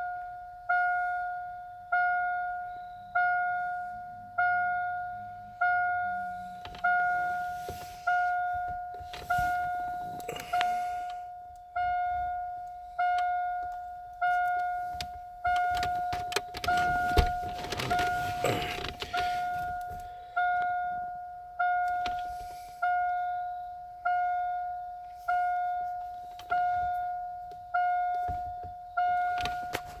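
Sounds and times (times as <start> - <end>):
car warning chime dinging: 0.0 - 30.0
clattering noise: 15.6 - 19.8.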